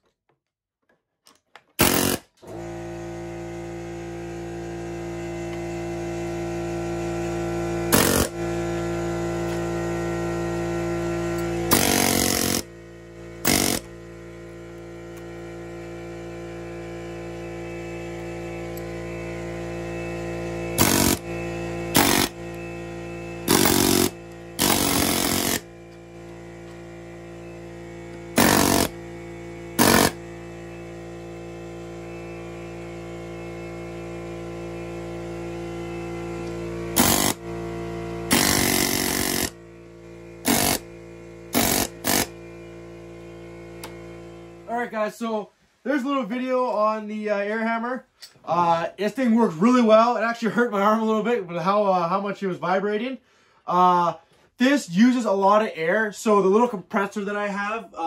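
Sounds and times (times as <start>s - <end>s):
air compressor running: 1.7s - 58.0s
pneumatic air hammer bursts: 1.8s - 2.6s, 7.9s - 8.5s, 11.4s - 12.8s, 13.4s - 13.9s, 20.7s - 22.6s, 23.4s - 25.7s, 28.1s - 29.1s, 29.7s - 30.4s, 36.9s - 37.5s, 38.2s - 39.6s, 40.4s - 40.9s, 41.5s - 42.4s.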